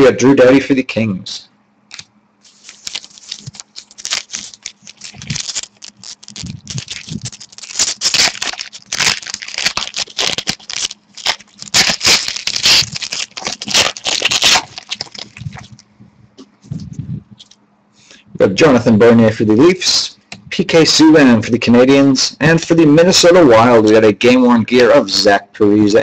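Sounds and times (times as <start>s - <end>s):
cards sliding and shuffling: 1.9s - 7.2s
wrapper tearing and crinkling: 1.9s - 15.8s.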